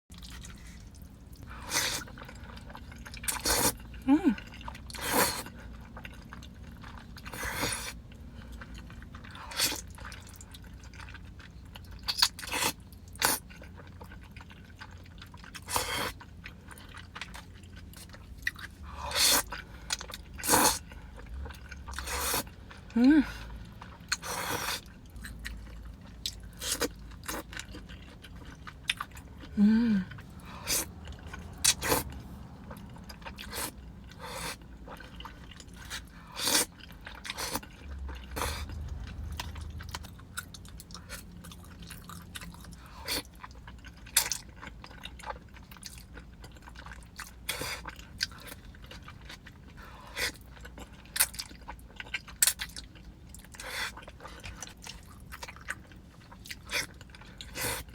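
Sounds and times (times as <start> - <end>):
chewing with wet smacks: 0.1 - 57.9
person humming: 4.1 - 4.4, 23.0 - 23.3, 29.5 - 30.1.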